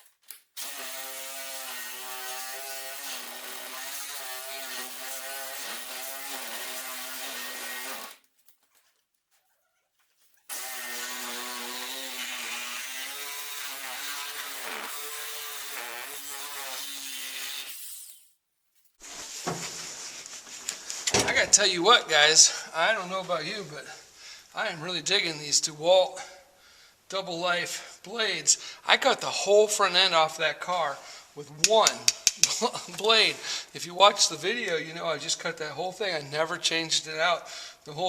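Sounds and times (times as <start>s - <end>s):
reciprocating saw cutting sheet metal: 0.6s - 8.2s, 10.5s - 18.3s.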